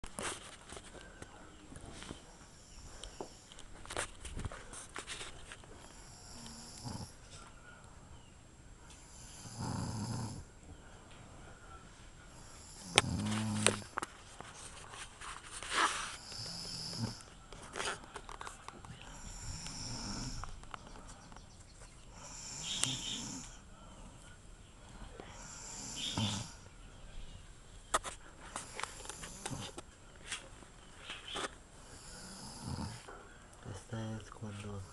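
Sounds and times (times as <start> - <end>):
woman snoring: 6.0 - 7.2, 9.1 - 10.5, 12.6 - 13.8, 16.2 - 17.3, 19.1 - 20.4, 22.1 - 23.6, 25.2 - 26.6, 31.8 - 33.1.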